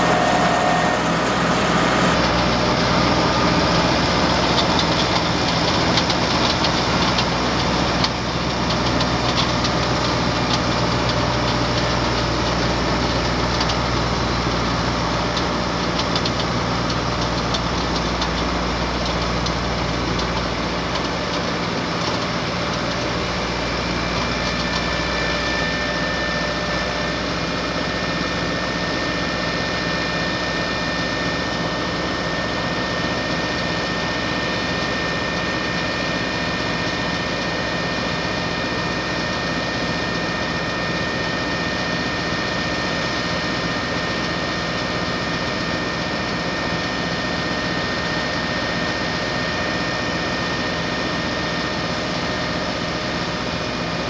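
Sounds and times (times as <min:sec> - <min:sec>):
thin high whine: 0:00.0 - 0:03.6
tractor diesel engine running: 0:00.0 - 0:07.6.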